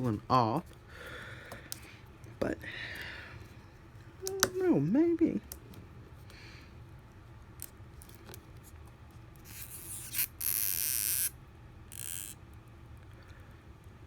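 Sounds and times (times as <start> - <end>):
adhesive strip peeling: 9.4 - 11.3.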